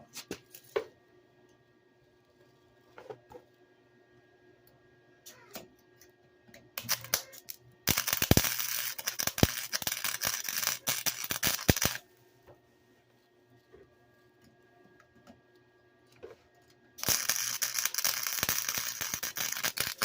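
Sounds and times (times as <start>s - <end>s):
welding arc crackling: 6.8s - 12.0s, 17.0s - 20.0s.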